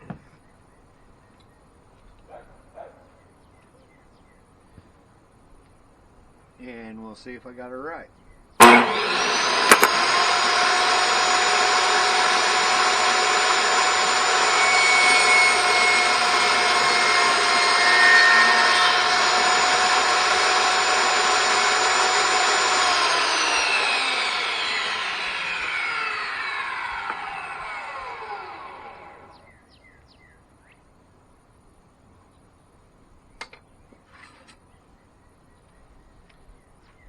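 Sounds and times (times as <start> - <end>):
table saw cutting wood: 8.6 - 29.3
saw motor winding down: 8.6 - 29.4
table saw switch click: 9.6 - 10.0.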